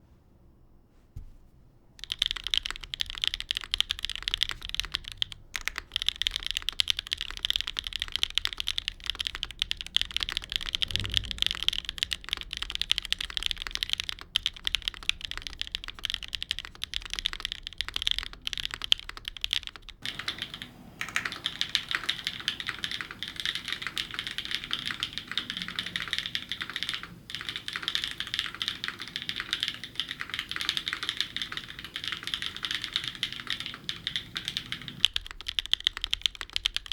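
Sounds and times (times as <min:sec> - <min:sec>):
fast typing on mechanical keyboard: 0:02.0 - 0:36.9.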